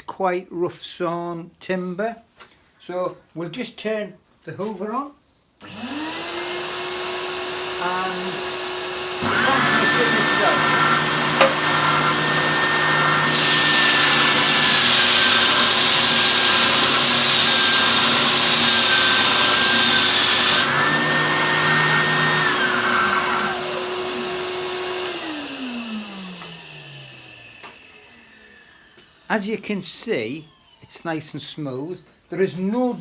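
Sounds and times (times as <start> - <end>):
motor winding down: 5.6 - 29.3
vacuum cleaner running: 5.6 - 29.3
sander rasping on timber: 5.7 - 27.5.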